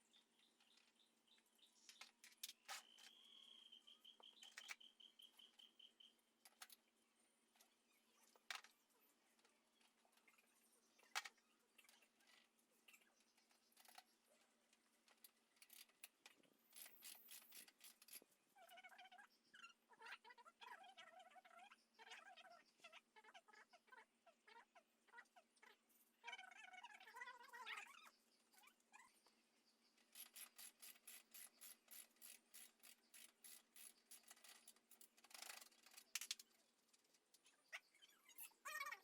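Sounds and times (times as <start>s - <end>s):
short chirping calls: 2.6s - 6.2s.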